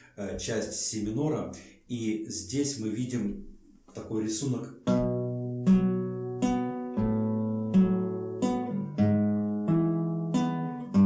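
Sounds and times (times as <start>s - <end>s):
fingerpicked acoustic guitar: 4.8s - 11.0s.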